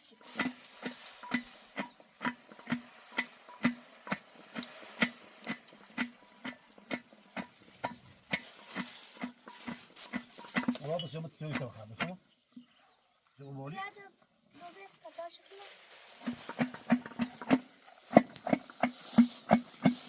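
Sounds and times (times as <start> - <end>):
faint hiss: 0.0 - 16.6
regular hollow knocking: 0.2 - 12.8, 16.1 - 20.0.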